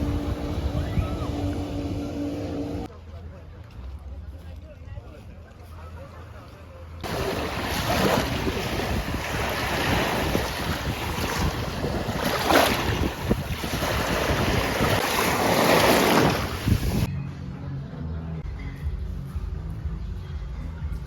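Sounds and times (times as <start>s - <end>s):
sea waves washing in: 0.0s - 2.9s, 7.0s - 17.1s
wind rumbling on microphone: 0.0s - 2.9s, 7.0s - 17.1s.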